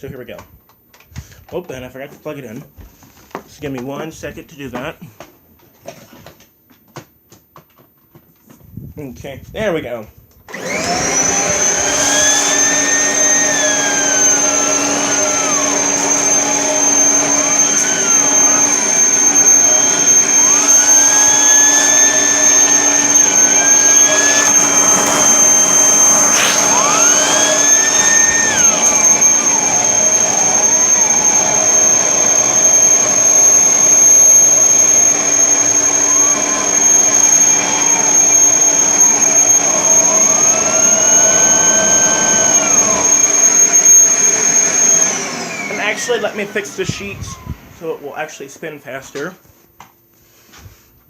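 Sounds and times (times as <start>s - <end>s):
vacuum cleaner whine and hum: 10.5s - 49.3s.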